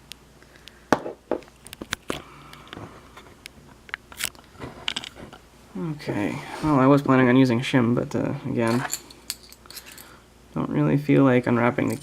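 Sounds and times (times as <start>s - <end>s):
metal tools clicking and tapping: 8.7s - 10.1s.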